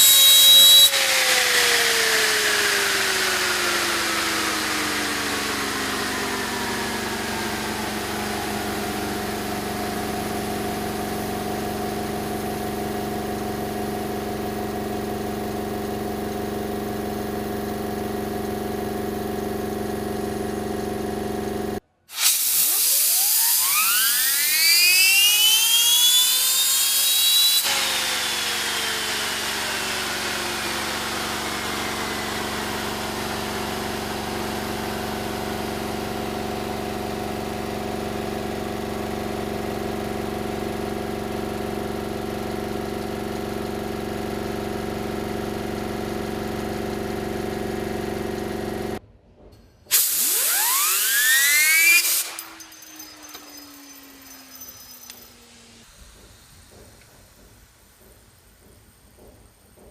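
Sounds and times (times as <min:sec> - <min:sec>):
fidget spinner whining: 0:00.0 - 0:13.2, 0:22.6 - 0:36.0, 0:50.2 - 0:57.9
loud hiss: 0:22.0 - 0:25.3, 0:49.9 - 0:52.4.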